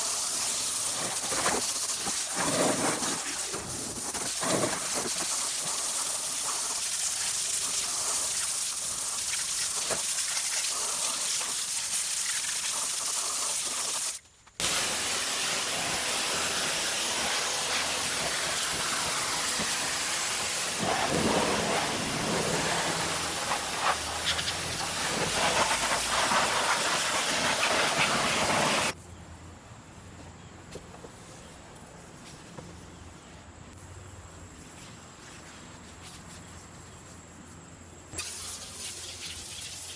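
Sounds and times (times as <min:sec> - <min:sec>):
pressure washer spraying: 0:00.0 - 0:29.0.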